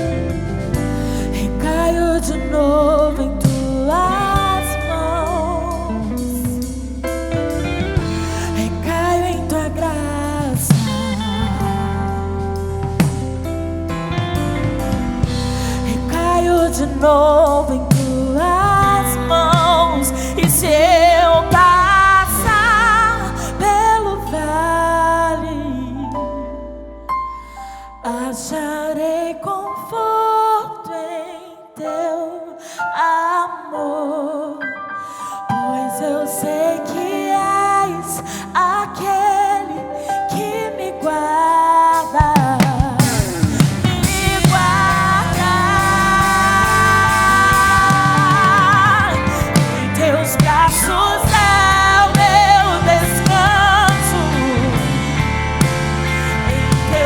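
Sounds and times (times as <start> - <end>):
worship band music: 0.0 - 25.9, 41.9 - 57.0
woman singing with vibrato: 1.0 - 6.7, 8.0 - 12.5, 15.2 - 26.6, 28.0 - 55.4, 56.0 - 57.0
sustained instrumental accompaniment: 43.0 - 57.0.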